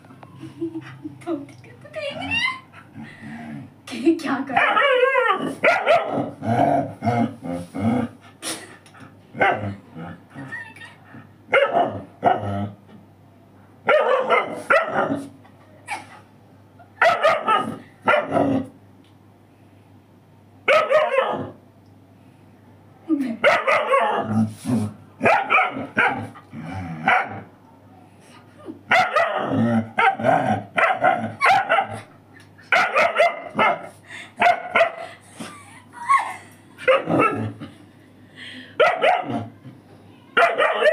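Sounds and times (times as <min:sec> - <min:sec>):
dog barking: 0:04.6 - 0:06.3, 0:11.5 - 0:12.4, 0:13.9 - 0:15.2, 0:17.0 - 0:18.4, 0:20.7 - 0:21.5, 0:23.4 - 0:24.2, 0:25.2 - 0:26.3, 0:28.9 - 0:32.1, 0:32.7 - 0:35.0, 0:36.9 - 0:37.4, 0:38.8 - 0:39.5, 0:40.4 - 0:40.9.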